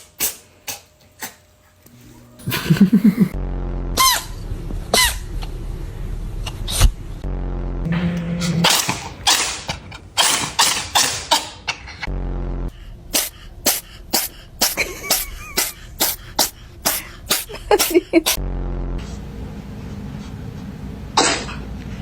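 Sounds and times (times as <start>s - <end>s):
cats sneezing: 8.6s - 11.7s, 13.1s - 18.4s, 21.2s - 21.6s.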